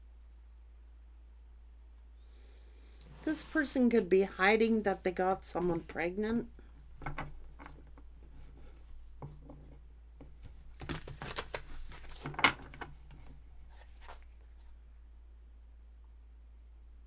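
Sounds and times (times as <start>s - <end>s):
low steady hum: 0.0s - 17.0s
cards rustling and slapping: 6.8s - 14.7s.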